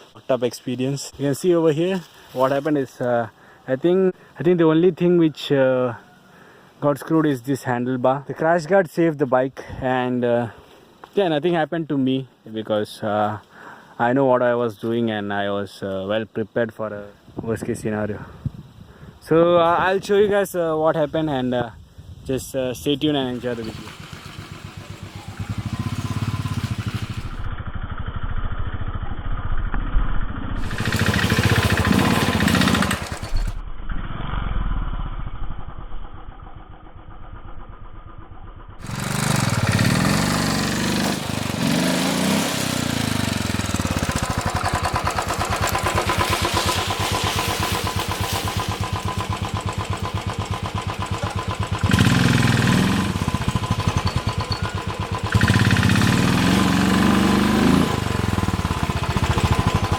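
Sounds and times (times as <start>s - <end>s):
motorcycle engine revving: 23.3s - 29.4s, 30.6s - 33.6s, 34.3s - 59.9s.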